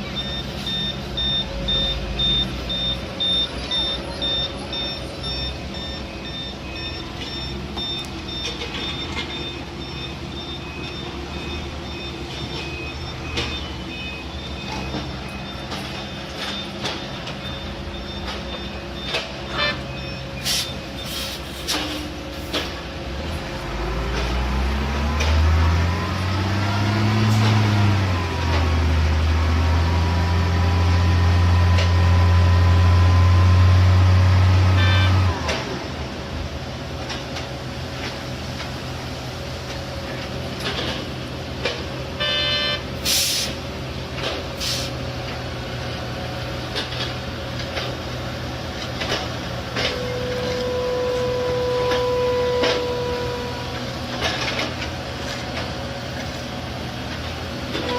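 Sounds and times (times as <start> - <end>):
reversing alarm beeping: 0.0 - 22.0, 34.7 - 35.5, 42.2 - 43.5
large engine revving: 23.1 - 36.0.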